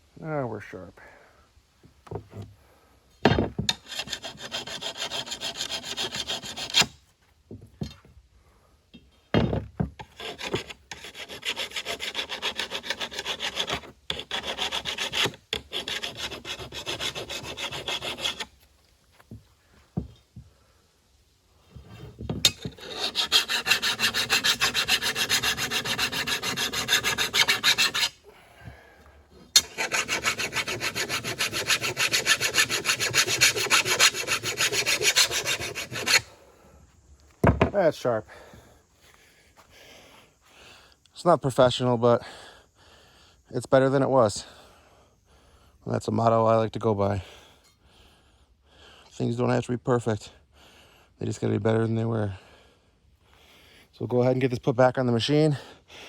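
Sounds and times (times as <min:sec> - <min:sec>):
file rasping on steel blade: 0:03.7 - 0:07.0, 0:10.0 - 0:18.5, 0:22.4 - 0:28.2, 0:29.5 - 0:36.3.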